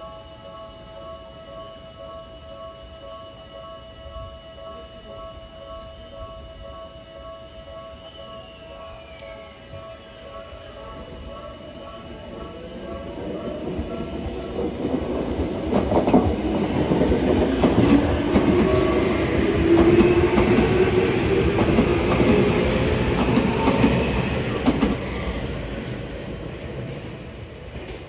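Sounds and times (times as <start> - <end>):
crossing warning bell ringing: 0.0 - 26.4
humming train running gear: 0.0 - 28.0.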